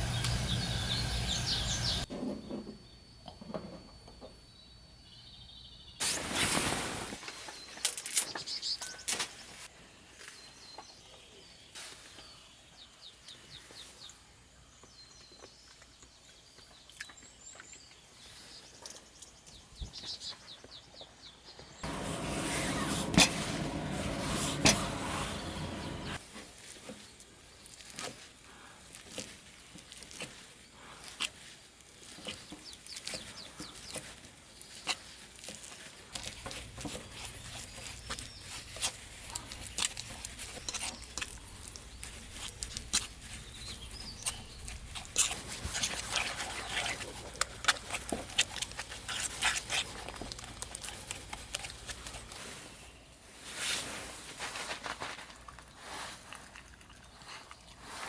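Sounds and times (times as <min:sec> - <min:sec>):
small birds chirping: 0:00.0 - 0:02.1, 0:10.2 - 0:26.2, 0:29.8 - 0:53.3.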